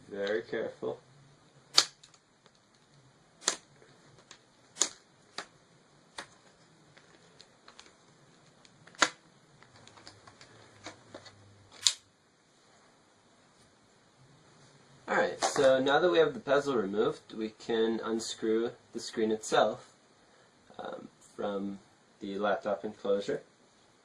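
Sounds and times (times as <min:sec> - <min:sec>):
plastic clips snapping loose: 0:04.2 - 0:05.5, 0:11.8 - 0:12.0.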